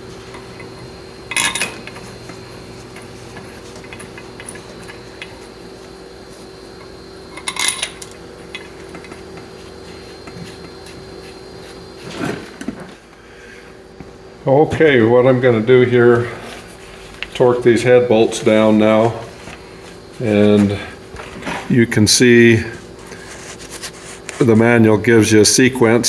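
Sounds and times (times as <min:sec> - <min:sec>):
shop hum: 0:00.0 - 0:26.0
metal tools clinking: 0:01.3 - 0:02.1, 0:02.9 - 0:05.4, 0:07.3 - 0:09.1.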